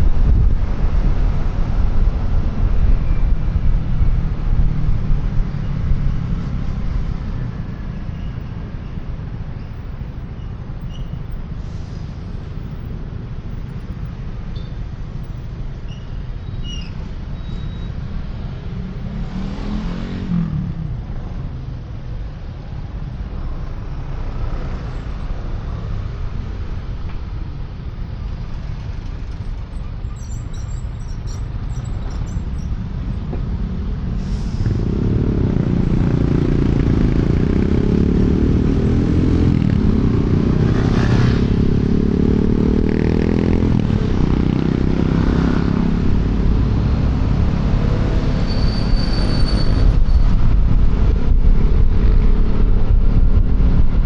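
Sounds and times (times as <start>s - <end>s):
wind rush: 0.0s - 7.7s, 49.2s - 54.0s
road rumble: 0.0s - 54.0s.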